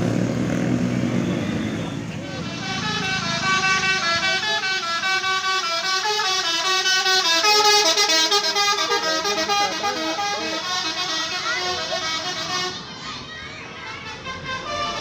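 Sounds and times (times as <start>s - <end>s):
bus horn playing quick tune: 2.2s - 12.8s, 13.9s - 15.0s.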